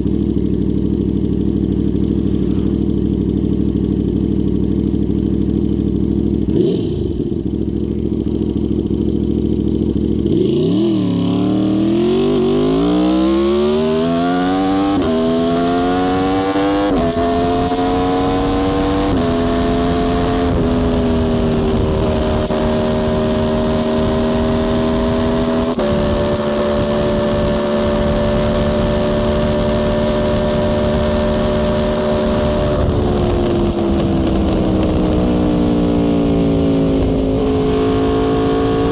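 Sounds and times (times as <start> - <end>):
motorcycle engine accelerating: 0.0 - 38.9.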